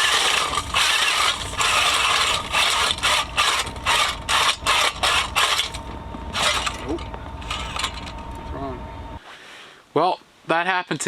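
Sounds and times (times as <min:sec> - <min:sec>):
ice auger grinding against ice: 0:00.0 - 0:08.1.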